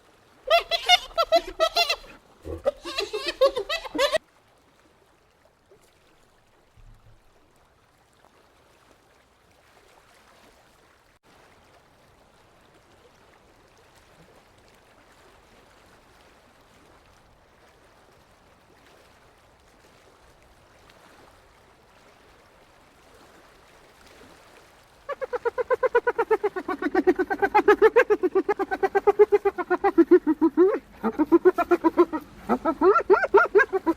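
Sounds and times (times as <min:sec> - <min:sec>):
hyena giggling: 0:00.5 - 0:04.2, 0:25.1 - 0:33.9.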